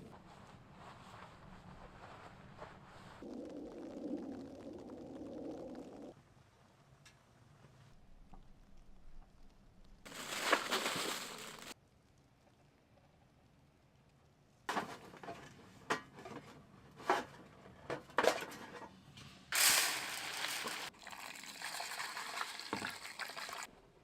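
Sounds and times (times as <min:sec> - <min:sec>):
burst of water noise: 0:19.5 - 0:23.7.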